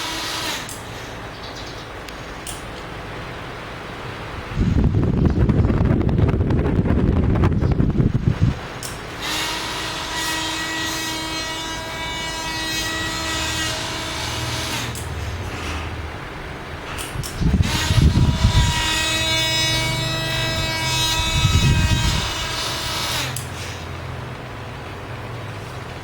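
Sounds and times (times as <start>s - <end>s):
drilling machine running: 0.0s - 1.3s, 8.8s - 15.9s, 16.8s - 24.0s.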